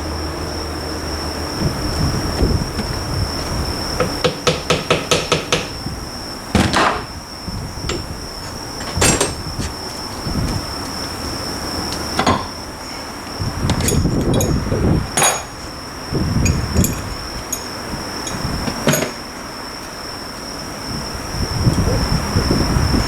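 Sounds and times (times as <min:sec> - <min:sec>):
hammer blows on metal parts: 0:03.9 - 0:06.0, 0:12.1 - 0:12.7, 0:13.7 - 0:19.3.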